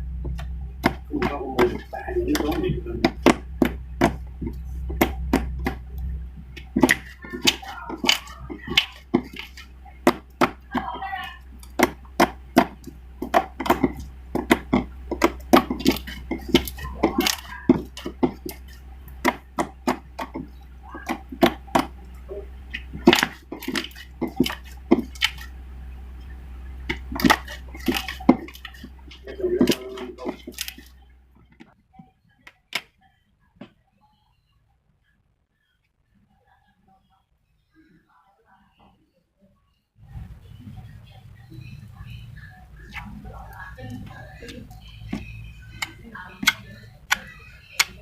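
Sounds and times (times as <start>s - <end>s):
slime clicking and popping: 0.3s - 25.6s.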